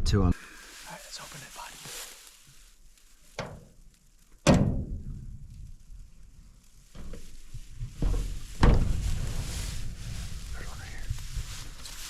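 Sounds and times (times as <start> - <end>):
scraping and rustling: 0.6 - 4.4, 5.5 - 12.0
metal door clanging: 4.4 - 5.0.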